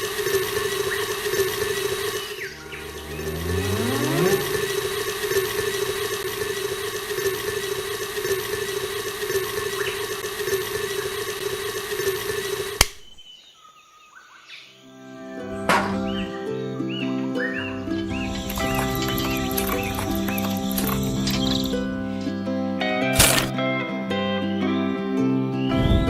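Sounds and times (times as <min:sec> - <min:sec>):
small electric motor whining: 0:00.0 - 0:12.9, 0:17.6 - 0:22.4
motor switching off click: 0:00.0 - 0:13.2, 0:17.9 - 0:22.2, 0:23.1 - 0:23.6.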